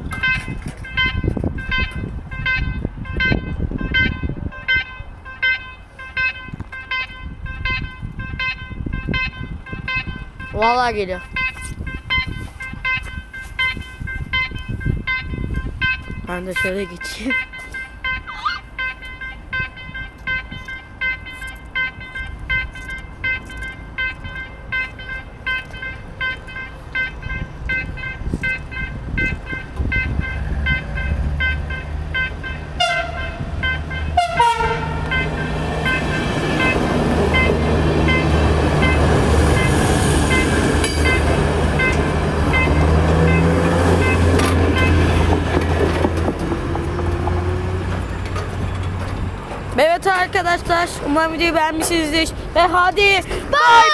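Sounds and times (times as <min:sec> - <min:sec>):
train rumbling past: 0:00.0 - 0:53.9
warning bell ringing: 0:00.1 - 0:45.8, 0:49.8 - 0:53.9
locomotive horn blast: 0:28.0 - 0:45.9.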